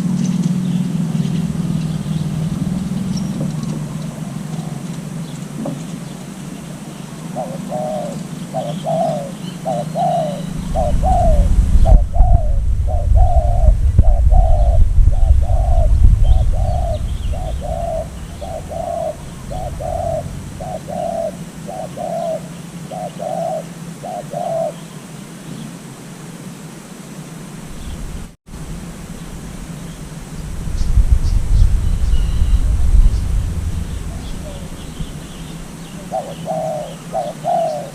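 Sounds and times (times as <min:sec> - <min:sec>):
loud low rumble: 0:00.0 - 0:05.2, 0:10.3 - 0:21.7, 0:28.5 - 0:36.2
dove cooing: 0:00.0 - 0:24.9, 0:31.2 - 0:37.9
small birds chirping: 0:00.0 - 0:25.8, 0:27.7 - 0:28.1, 0:29.1 - 0:37.9.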